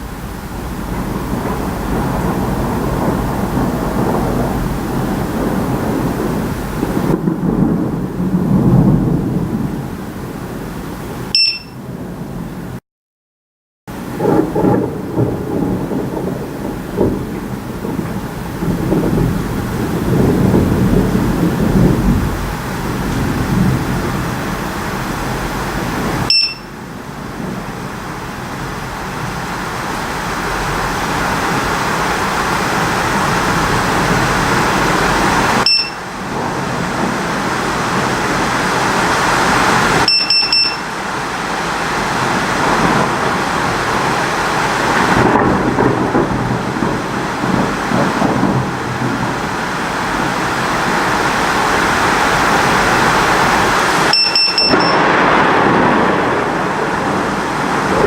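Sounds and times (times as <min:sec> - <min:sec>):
heavy rain pouring: 0:00.0 - 0:12.8, 0:13.9 - 0:58.0
low thunder rumble: 0:00.0 - 0:12.8, 0:13.9 - 0:54.1, 0:54.8 - 0:58.0
short high beeps: 0:11.3 - 0:11.8, 0:26.3 - 0:26.7, 0:35.6 - 0:36.0, 0:40.1 - 0:40.8, 0:54.1 - 0:55.0.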